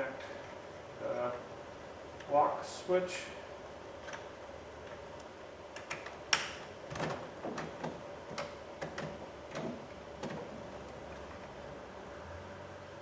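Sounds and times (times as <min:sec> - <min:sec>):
hard plastic clicks and knocks: 0:05.8 - 0:11.0.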